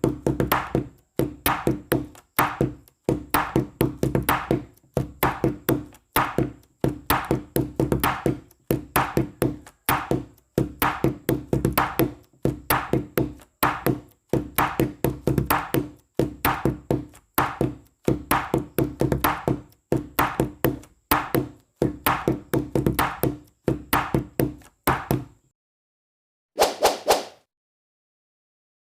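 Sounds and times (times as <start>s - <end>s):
light percussive tune: 0.0s - 25.4s.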